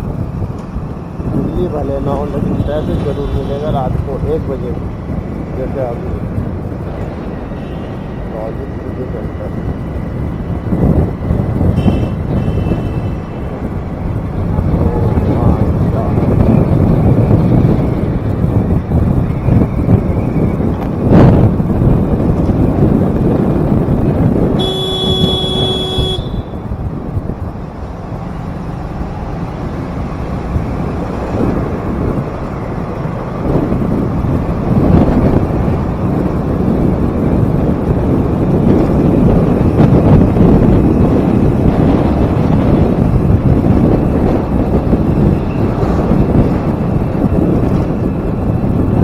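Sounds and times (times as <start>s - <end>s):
motorbike and road traffic: 0.0s - 49.0s
wind buffeting microphone: 0.0s - 49.0s
vehicle horn: 11.7s - 13.4s, 24.6s - 26.7s.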